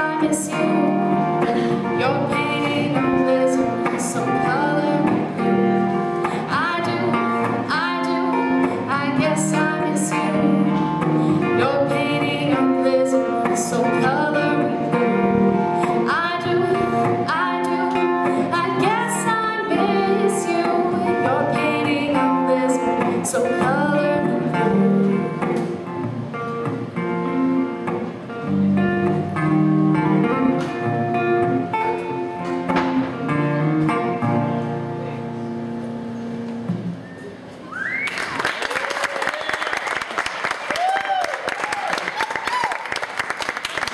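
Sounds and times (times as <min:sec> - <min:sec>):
person singing: 0:00.0 - 0:25.6
acoustic guitar: 0:00.0 - 0:38.1.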